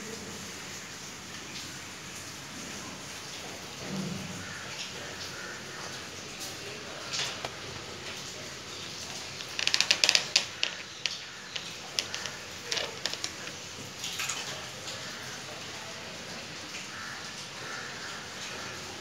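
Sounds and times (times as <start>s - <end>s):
sharp clicks and knocks: 7.1s - 8.1s, 8.9s - 13.8s.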